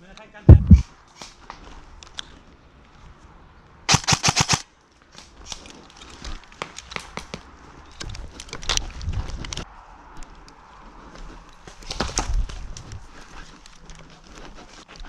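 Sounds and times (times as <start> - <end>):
airsoft gun shots: 3.9 - 4.6.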